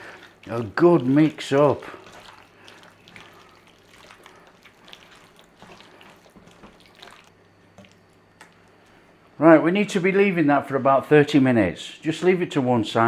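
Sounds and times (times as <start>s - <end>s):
wet squishing of hands mixing meat: 0.0s - 9.4s.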